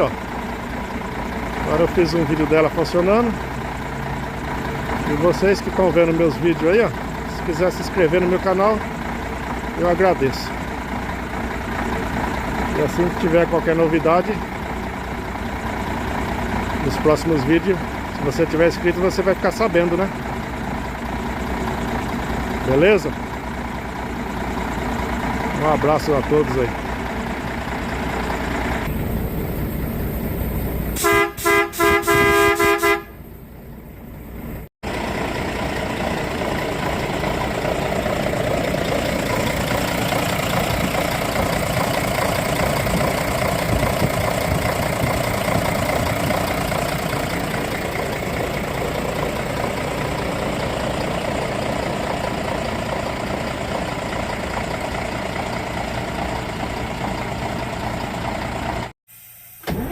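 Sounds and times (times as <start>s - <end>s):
diesel truck engine running: 0.0s - 59.9s
truck horn toots: 31.0s - 33.2s.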